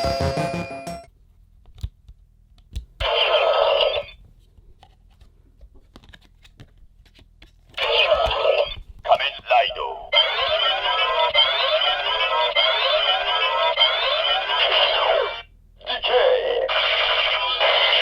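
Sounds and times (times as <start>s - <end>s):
background music: 0.0s - 1.1s
electronic toy sound effect: 3.0s - 4.2s, 10.2s - 18.0s.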